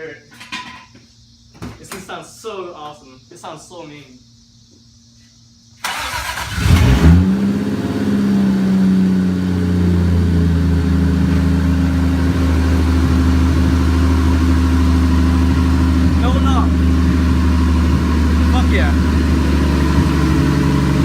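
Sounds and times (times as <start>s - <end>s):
engine cranking and idling: 5.8s - 21.0s
man talking: 16.0s - 16.9s, 18.4s - 19.1s.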